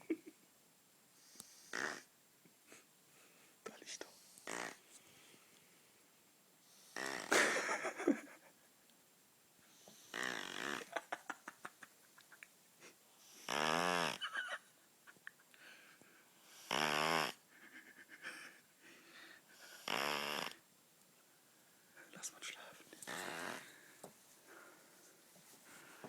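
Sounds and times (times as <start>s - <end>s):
child snoring: 1.5s - 2.1s, 4.4s - 4.8s, 6.8s - 7.4s, 10.0s - 11.0s, 13.4s - 14.2s, 16.5s - 17.4s, 19.6s - 20.6s, 23.0s - 23.7s.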